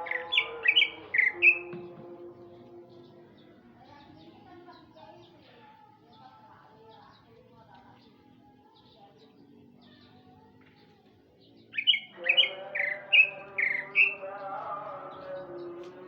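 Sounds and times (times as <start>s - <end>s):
bird singing sharp whistled notes: 0.0s - 2.0s.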